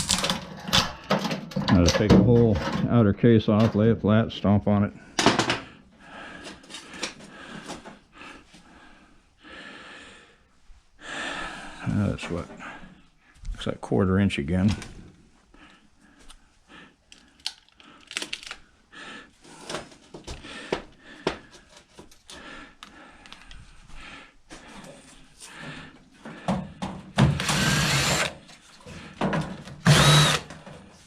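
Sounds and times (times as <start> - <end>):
power drill running: 27.3 - 28.4, 29.8 - 30.6.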